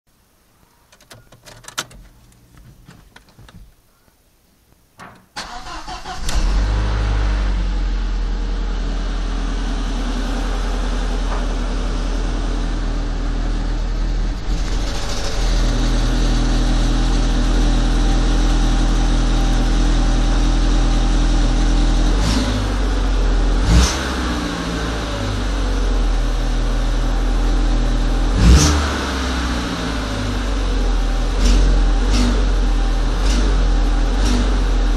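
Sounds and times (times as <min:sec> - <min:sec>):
car engine starting and running: 0:01.0 - 0:03.6, 0:05.4 - 0:34.9
engine rattling crunching noise: 0:10.3 - 0:17.9.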